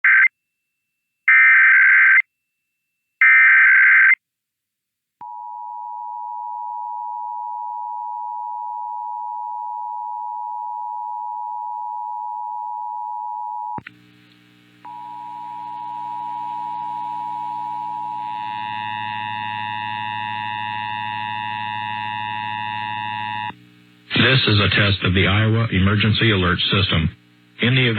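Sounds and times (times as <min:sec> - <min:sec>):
data tone bursts: 0:14.9 - 0:23.5.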